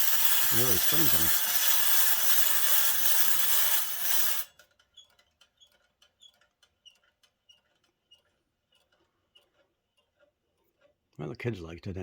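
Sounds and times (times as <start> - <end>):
clockwork rasping whir: 0.0 - 4.6
clockwork ticking with metallic ring: 0.0 - 10.2.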